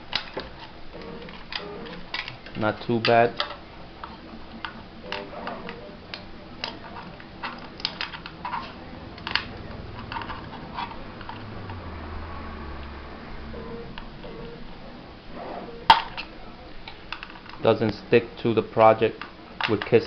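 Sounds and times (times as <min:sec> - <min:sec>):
plastic clicking and cracking: 0:00.0 - 0:11.8, 0:18.9 - 0:20.0
low hum: 0:00.0 - 0:17.6.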